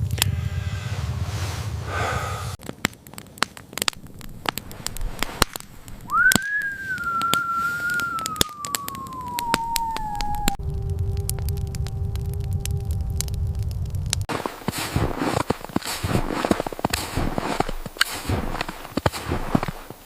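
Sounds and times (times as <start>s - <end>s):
sharp clicks and crackles: 2.6s - 20.0s
long sliding whistling tone: 6.1s - 13.0s.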